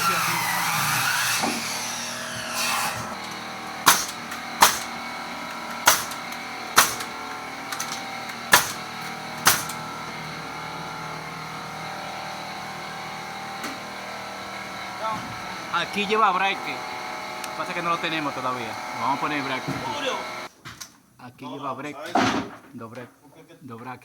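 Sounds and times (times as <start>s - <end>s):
steady mechanical hum: 0.0s - 20.5s
hammer driving nails into wood: 2.3s - 9.9s.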